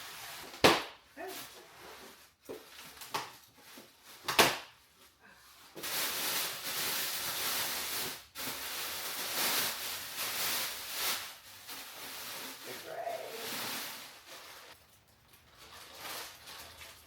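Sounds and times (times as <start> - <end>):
packaging rustling: 5.7 - 17.0.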